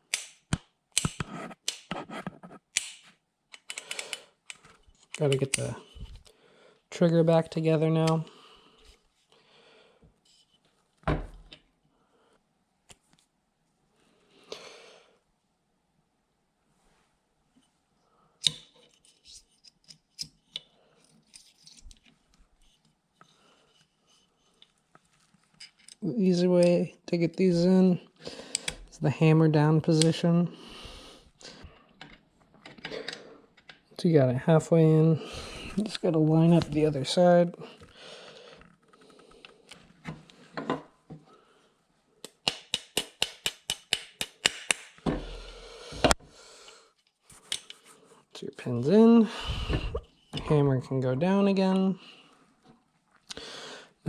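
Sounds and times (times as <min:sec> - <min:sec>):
handling and scraping of parts: 0:18.5 - 0:26.0, 0:47.0 - 0:48.1
metal parts clicking and clinking: 0:25.5 - 0:26.0
sharp metallic taps: 0:42.4 - 0:45.0.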